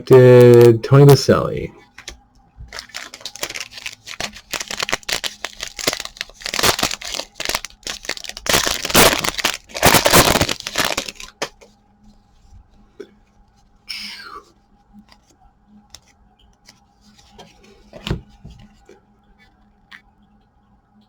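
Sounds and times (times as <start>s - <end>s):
foil wrapper crinkling: 1.9s - 11.7s.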